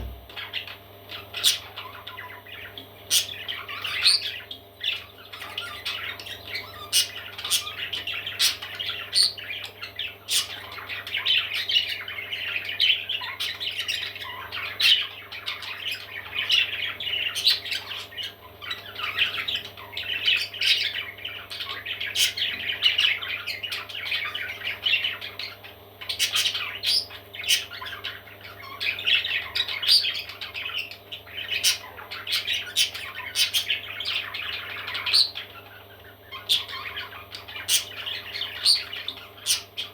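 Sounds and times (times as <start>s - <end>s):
steady low hum: 0.0s - 1.1s
parrot chicks squawking: 0.0s - 39.9s.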